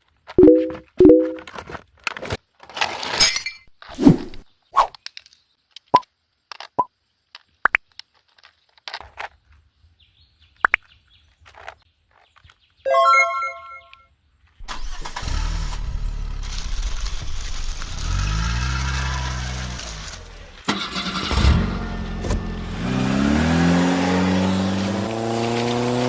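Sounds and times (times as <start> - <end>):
short beeps: 0.4 - 1.5, 12.9 - 14.0
plastic parts clicking and knocking: 5.0 - 9.6
chirpy electronic tone: 12.9 - 14.0.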